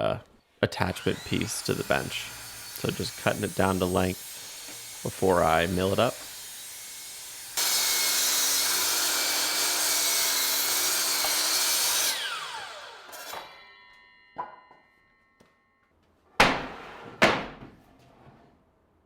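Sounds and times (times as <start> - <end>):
power saw cutting wood: 0.8 - 14.4
saw motor whining down: 0.9 - 14.2
wooden boards knocking: 16.4 - 17.8.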